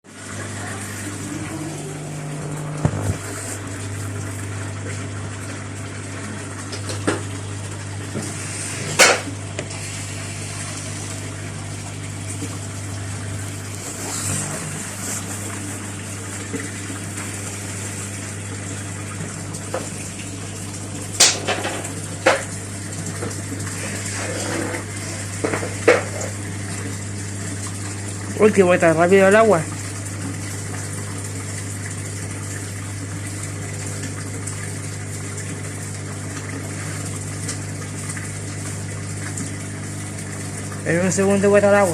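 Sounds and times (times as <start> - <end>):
washing machine running: 0.0 - 41.9
washing machine knocks: 2.7 - 3.2.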